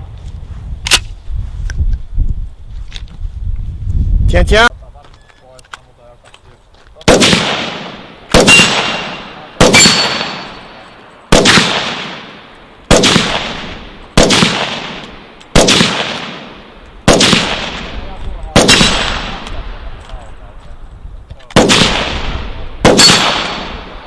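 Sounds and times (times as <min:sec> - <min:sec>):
gunshots: 0:07.0 - 0:19.9, 0:21.5 - 0:24.0.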